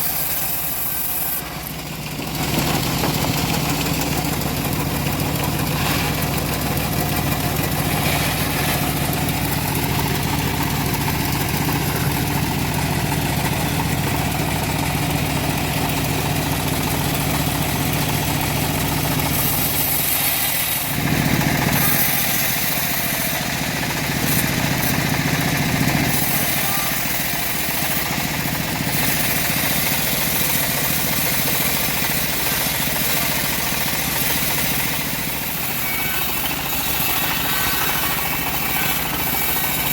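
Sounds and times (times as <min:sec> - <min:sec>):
hissing rasp: 0:00.0 - 0:01.7, 0:19.1 - 0:39.9
engine-driven bandsaw ripping wood: 0:00.0 - 0:39.9.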